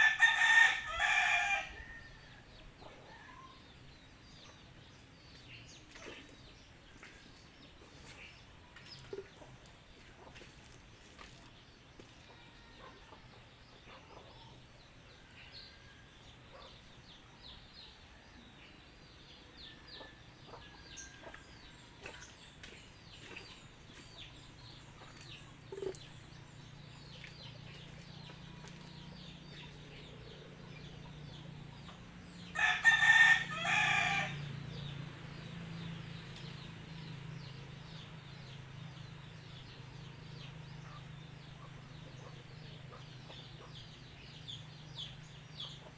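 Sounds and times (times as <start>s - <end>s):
rooster crowing: 0.0s - 2.4s, 32.5s - 34.4s.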